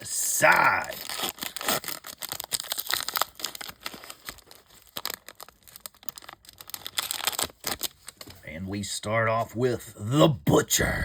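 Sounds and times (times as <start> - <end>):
foil pack crinkling and tearing: 0.0 - 8.5.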